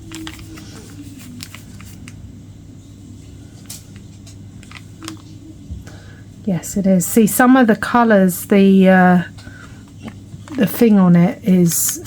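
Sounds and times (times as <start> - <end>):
yarn packs clicking and rustling: 0.0 - 2.1
low background hum: 0.0 - 12.0.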